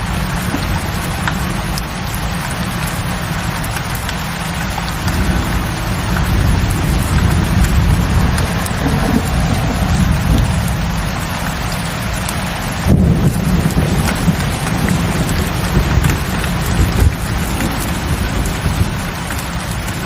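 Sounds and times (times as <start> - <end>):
raindrops ticking: 0.0 - 20.0
steady rainfall: 0.0 - 20.0
deep low rumble: 4.8 - 18.9.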